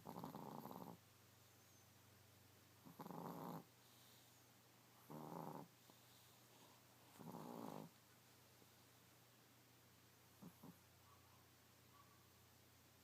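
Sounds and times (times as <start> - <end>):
dog snoring: 0.0 - 1.0, 2.8 - 4.3, 5.0 - 6.4, 7.1 - 8.0, 10.4 - 10.8.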